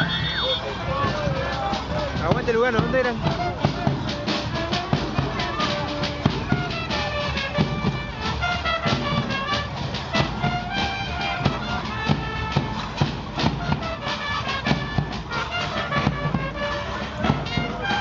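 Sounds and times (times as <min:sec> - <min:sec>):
brass band playing: 0:00.0 - 0:18.0
steady drum beat: 0:00.0 - 0:18.0.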